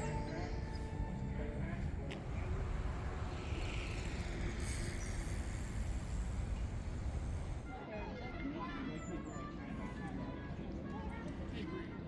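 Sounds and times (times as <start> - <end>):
road traffic rumble: 0.0 - 7.7
vehicle tyres passing: 1.2 - 7.7.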